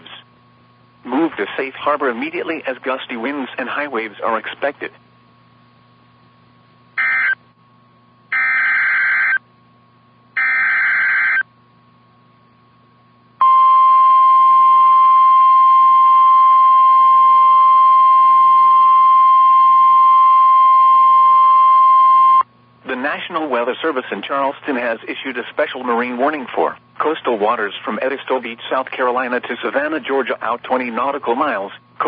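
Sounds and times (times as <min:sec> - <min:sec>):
screeching digital data tones: 0:07.0 - 0:07.4, 0:10.4 - 0:11.4.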